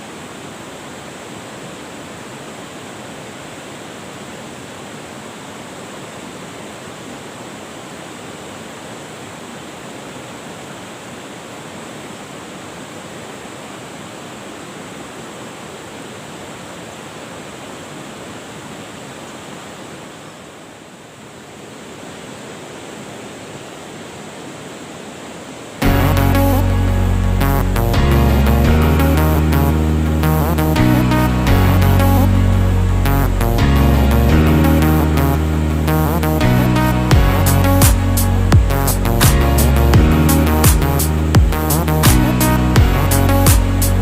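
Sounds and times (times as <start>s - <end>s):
river water rushing: 0.0s - 33.0s.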